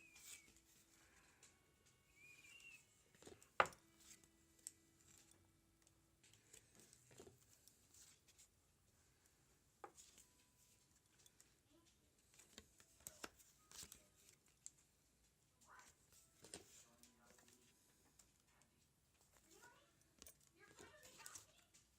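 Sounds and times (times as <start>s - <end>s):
cards being flipped through: 0.0s - 5.4s, 6.2s - 8.6s, 9.8s - 14.8s, 15.6s - 18.3s, 19.2s - 21.9s.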